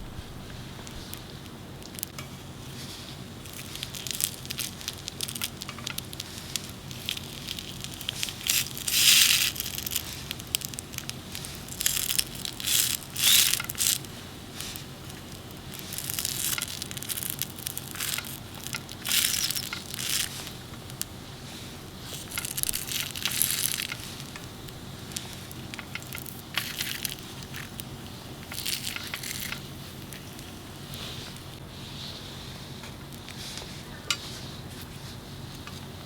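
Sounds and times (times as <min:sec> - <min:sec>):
faint low hum: 0:00.0 - 0:02.1
packaging crinkling and crunching: 0:03.4 - 0:31.6.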